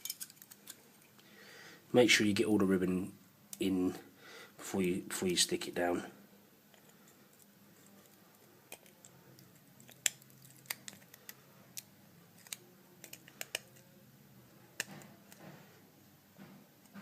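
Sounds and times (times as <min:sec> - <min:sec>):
small plastic parts clicking: 0:06.7 - 0:13.9.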